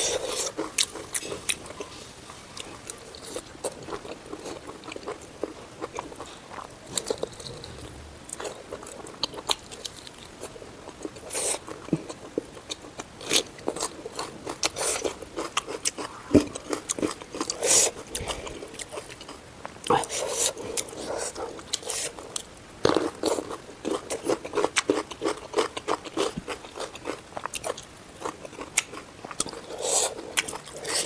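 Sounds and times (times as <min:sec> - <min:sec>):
chewing and biting food: 0:00.0 - 0:31.0
food crunches: 0:21.7 - 0:31.0.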